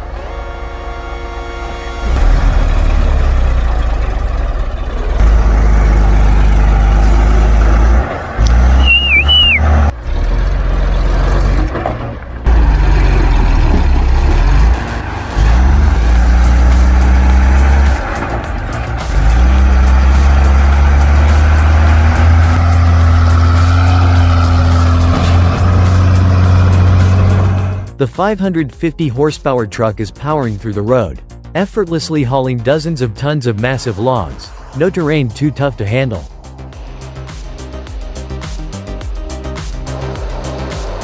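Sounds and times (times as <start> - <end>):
diesel truck engine labouring: 0.0 - 28.0
music with heavy bass: 1.4 - 4.3, 5.1 - 11.8, 12.4 - 41.0
brief high squeal: 8.8 - 9.7.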